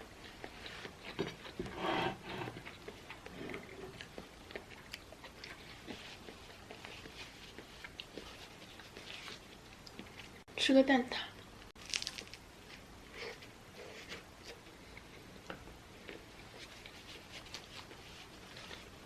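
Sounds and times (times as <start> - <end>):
chewing and smacking: 0.0 - 1.6, 2.6 - 10.4, 14.4 - 19.0.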